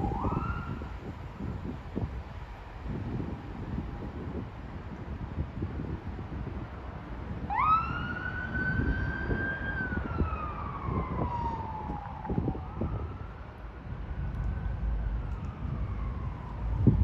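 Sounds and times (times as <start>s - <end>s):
emergency vehicle siren wailing: 0.0s - 2.1s, 7.2s - 17.0s
low rumble of wind: 0.0s - 17.0s.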